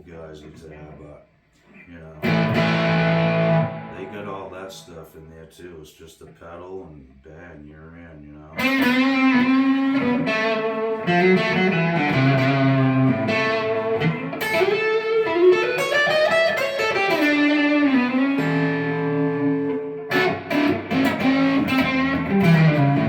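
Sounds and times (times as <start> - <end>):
overdriven electric guitar lead: 2.2 - 4.6, 8.6 - 23.0.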